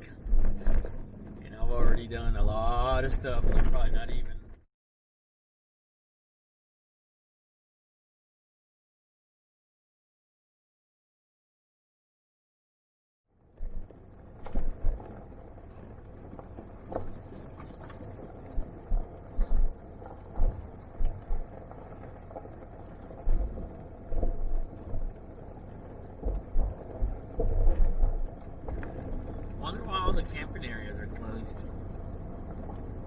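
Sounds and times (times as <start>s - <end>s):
vehicle rumble on dirt road: 0.0s - 4.6s, 13.4s - 33.0s
low thumps from bumps: 18.2s - 30.7s.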